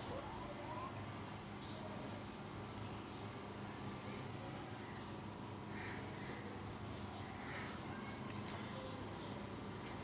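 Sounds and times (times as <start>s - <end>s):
low background noise: 0.0s - 10.0s.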